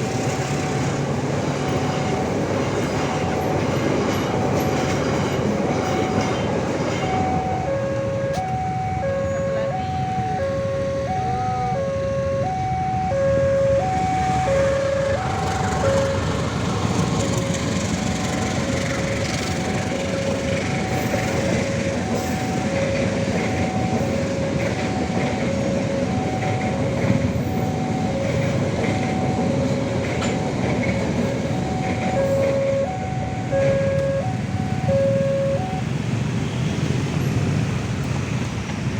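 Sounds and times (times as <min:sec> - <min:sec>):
passing train rumble and clatter: 0:00.0 - 0:38.9
level-crossing two-tone alarm: 0:05.9 - 0:36.1.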